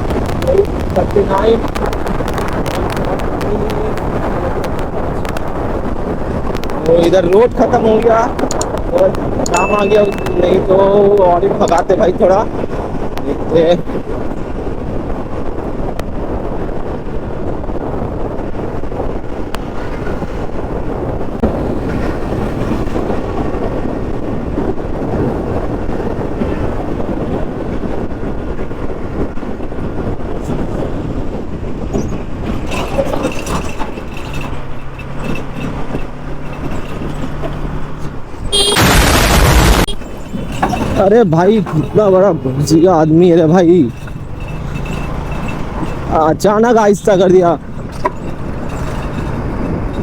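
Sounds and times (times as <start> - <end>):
wind rush on microphone: 0.0 - 50.0
motorcycle engine running: 38.5 - 43.1.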